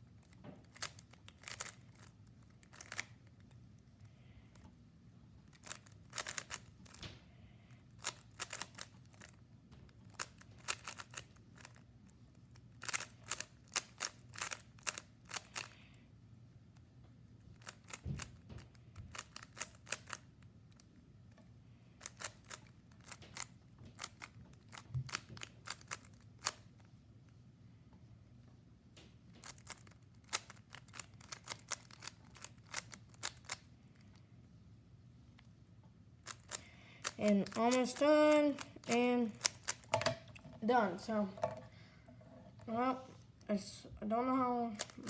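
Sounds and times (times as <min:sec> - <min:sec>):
puzzle cube clicking: 0:00.2 - 0:03.1, 0:05.5 - 0:07.0, 0:08.0 - 0:09.4, 0:10.1 - 0:11.8, 0:12.8 - 0:15.8, 0:17.6 - 0:18.4, 0:19.1 - 0:20.3, 0:22.0 - 0:26.7, 0:29.4 - 0:33.7, 0:36.3 - 0:40.2, 0:44.8 - 0:45.0.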